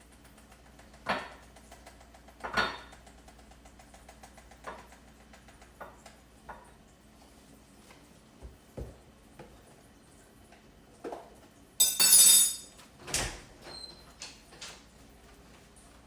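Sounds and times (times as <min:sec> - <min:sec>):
utensils and dishes clicking: 0:11.8 - 0:12.7.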